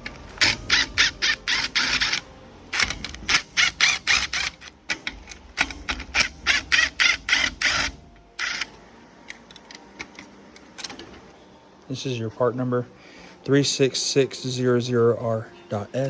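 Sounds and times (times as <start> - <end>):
screwdriver rasping clicks: 0.1 - 8.7.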